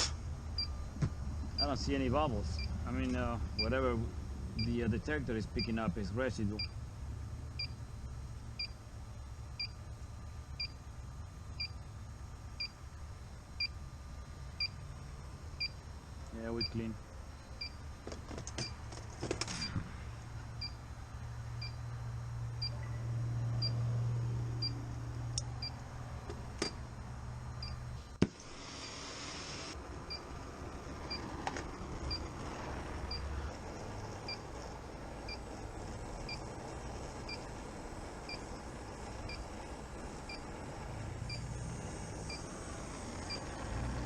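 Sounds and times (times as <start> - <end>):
gas leak detector ticking and beeping: 1.5 - 1.8, 2.6 - 2.8, 6.6 - 6.8, 7.6 - 7.8, 8.6 - 8.8, 9.6 - 9.8, 10.6 - 10.8, 11.6 - 11.8, 20.6 - 20.8, 21.6 - 21.8, 37.3 - 37.5, 39.2 - 39.4
low hum: 18.6 - 28.6
brief hiss: 28.4 - 29.8.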